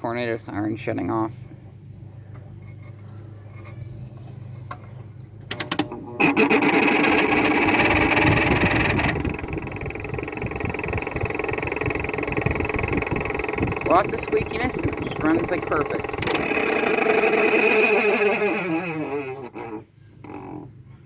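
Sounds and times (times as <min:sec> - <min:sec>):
low steady hum: 0:00.0 - 0:21.0
squeaky air conditioner fan: 0:00.0 - 0:21.0
clicks: 0:04.7 - 0:17.6.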